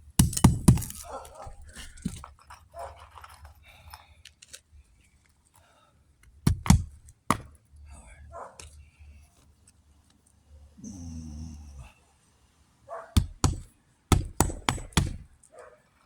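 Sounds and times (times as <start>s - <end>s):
faint scraping and handling: 0.9s - 6.4s
sharp knocks on roof: 6.5s - 7.5s, 13.2s - 15.3s.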